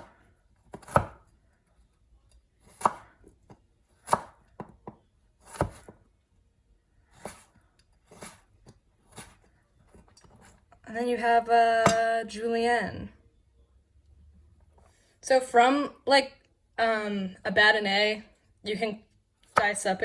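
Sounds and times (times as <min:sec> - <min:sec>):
knife slicing carrot: 0:00.0 - 0:01.4, 0:02.3 - 0:06.0, 0:07.1 - 0:10.6.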